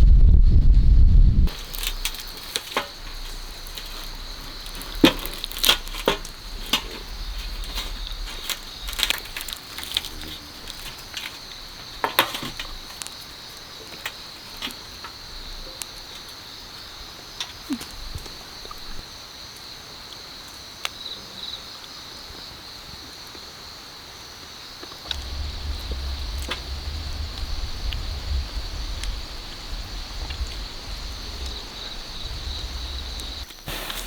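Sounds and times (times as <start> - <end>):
sharp crackles and clicks: 0.0 - 13.2, 25.0 - 34.0
steady high hiss: 1.5 - 20.2, 24.6 - 34.0.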